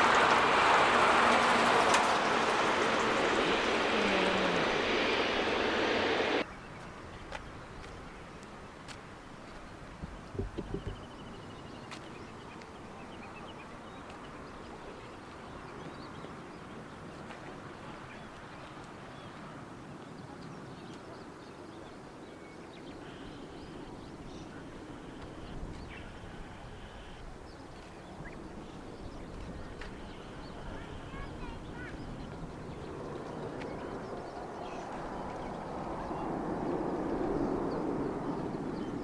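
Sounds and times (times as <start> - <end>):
high buzzy call: 0.0 - 6.4
outdoor background noise: 0.0 - 39.0.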